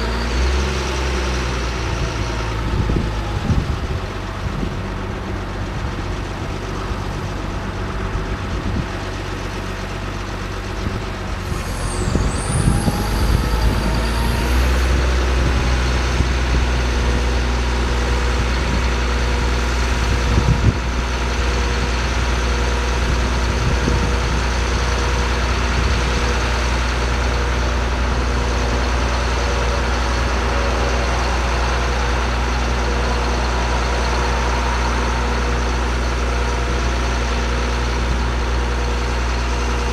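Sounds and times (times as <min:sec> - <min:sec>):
truck engine running: 0:00.0 - 0:39.9
high squealing glide: 0:11.4 - 0:15.5.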